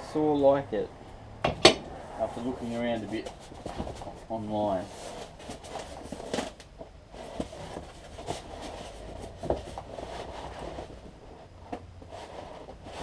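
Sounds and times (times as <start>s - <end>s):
cardboard box being handled: 2.3s - 11.1s
packaging rustling: 3.0s - 11.0s.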